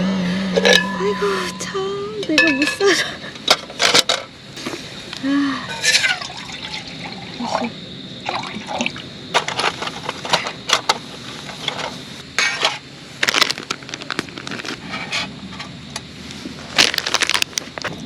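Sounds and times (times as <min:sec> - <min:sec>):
rustling and scraping: 0:00.6 - 0:06.2, 0:09.3 - 0:18.0.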